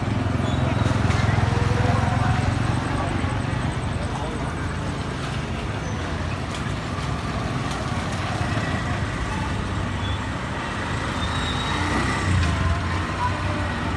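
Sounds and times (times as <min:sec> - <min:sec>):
faint background voices: 0:00.0 - 0:13.9
traffic engines rumbling past: 0:00.0 - 0:13.9.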